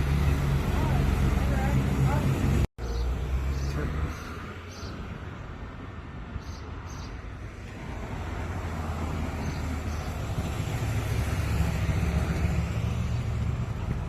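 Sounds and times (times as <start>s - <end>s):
vehicle driving past: 7.7s - 14.0s.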